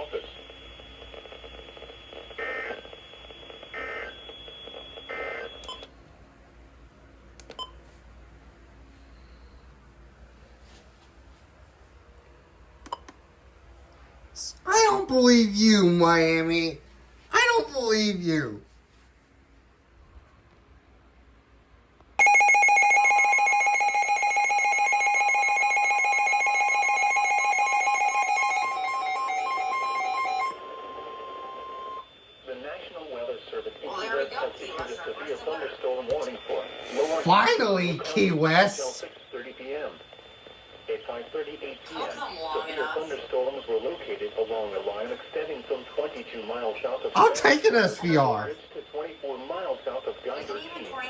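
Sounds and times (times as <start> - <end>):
clicks: 7.4 - 7.7
rapidly pulsing electronic alarm: 22.2 - 34.2, 35.2 - 41.5, 46.5 - 51.0
steady high whine: 22.3 - 51.0.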